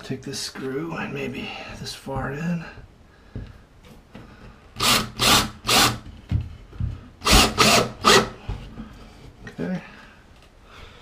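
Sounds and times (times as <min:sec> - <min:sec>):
screw being driven into wood: 0:07.2 - 0:08.4.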